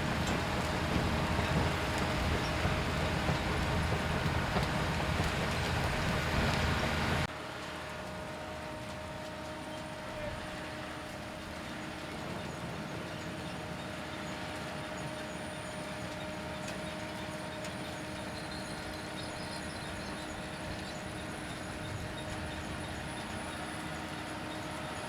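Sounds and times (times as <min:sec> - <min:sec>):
harvester mechanical rattle: 0:00.0 - 0:07.3
harvester steady whine: 0:00.0 - 0:25.0.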